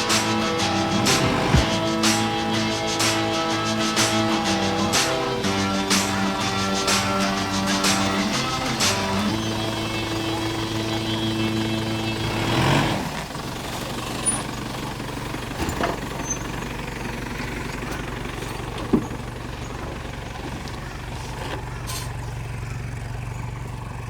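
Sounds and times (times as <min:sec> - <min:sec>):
off-road vehicle engine running: 0:00.0 - 0:24.0
sharp knocks: 0:00.9 - 0:02.3.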